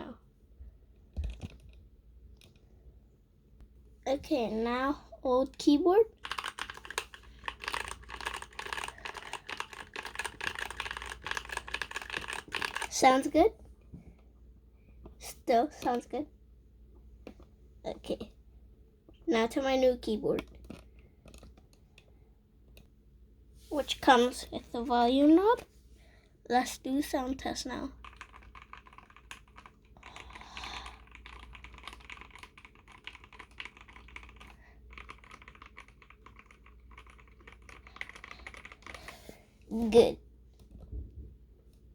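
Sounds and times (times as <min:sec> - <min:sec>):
keyboard typing clicks: 0:06.2 - 0:12.9
mechanical keyboard typing: 0:06.2 - 0:13.0, 0:28.0 - 0:39.0.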